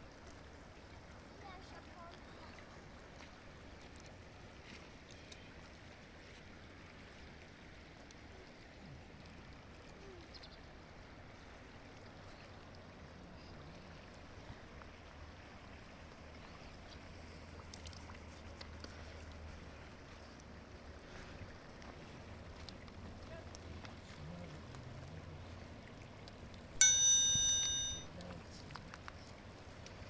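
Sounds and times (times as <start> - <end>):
river flowing: 0.0 - 30.0.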